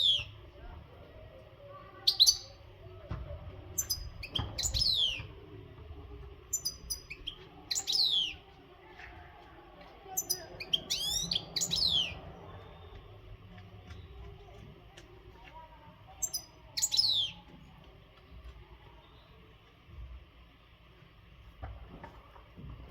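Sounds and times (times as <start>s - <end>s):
bird twittering song: 0.0s - 0.4s, 2.0s - 2.6s, 3.7s - 5.4s, 6.5s - 8.4s, 10.1s - 13.2s, 16.2s - 17.5s.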